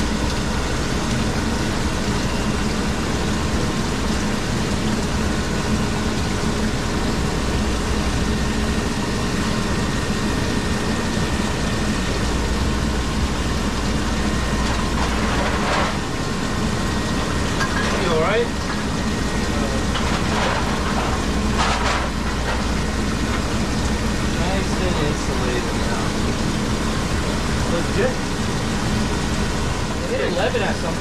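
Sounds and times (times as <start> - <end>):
machinery humming: 0.0 - 31.0.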